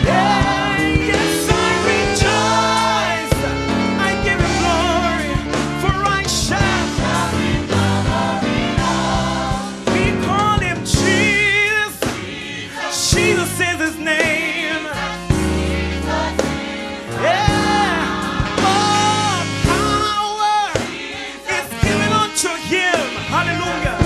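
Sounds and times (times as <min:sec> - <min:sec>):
bass line: 0:00.0 - 0:11.9, 0:13.0 - 0:20.9, 0:21.5 - 0:24.0
drum beat: 0:00.0 - 0:24.0
voices singing with vibrato: 0:00.0 - 0:24.0.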